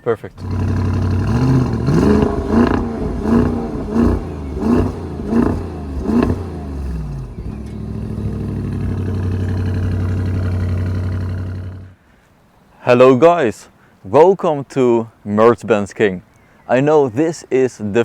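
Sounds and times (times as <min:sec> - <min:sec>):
car engine revving and idling: 0:00.4 - 0:12.0.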